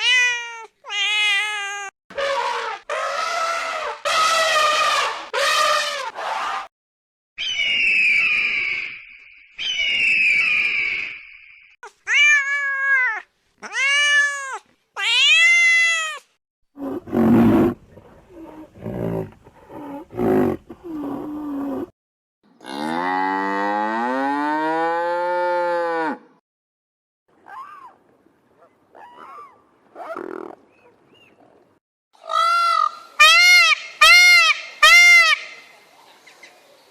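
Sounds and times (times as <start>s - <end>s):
hoarse animal calls: 16.8s - 21.9s.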